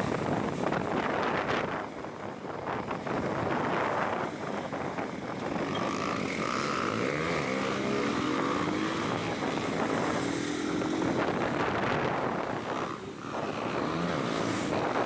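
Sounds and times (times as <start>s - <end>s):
wind on microphone: 0.0s - 15.0s
motorcycle engine accelerating: 5.5s - 15.0s.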